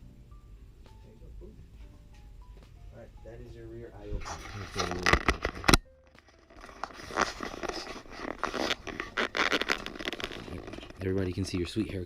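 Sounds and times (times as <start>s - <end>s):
computer parts scraping and rustling: 4.1s - 12.0s.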